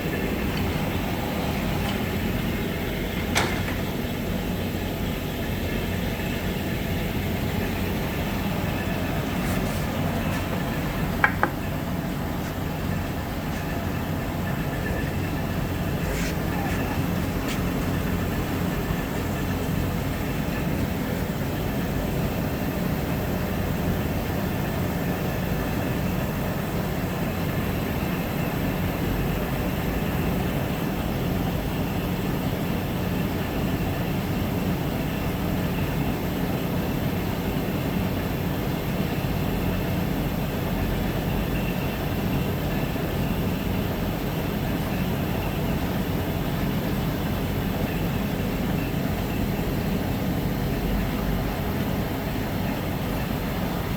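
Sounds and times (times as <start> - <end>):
lathe motor humming: 0.0 - 27.1.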